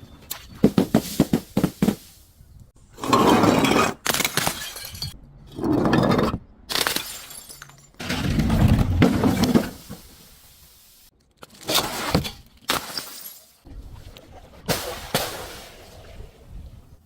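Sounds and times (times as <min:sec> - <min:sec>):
glass breaking: 0:04.0 - 0:05.2, 0:06.7 - 0:08.3, 0:12.7 - 0:13.6
glass crunching and shattering: 0:04.0 - 0:05.2, 0:06.7 - 0:08.4, 0:11.6 - 0:13.6.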